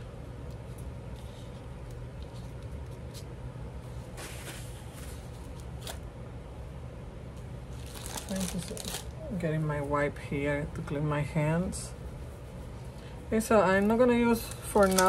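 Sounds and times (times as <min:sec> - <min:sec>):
steady low hum: 0:00.0 - 0:15.0
paper rustling: 0:03.9 - 0:06.0, 0:14.5 - 0:15.0.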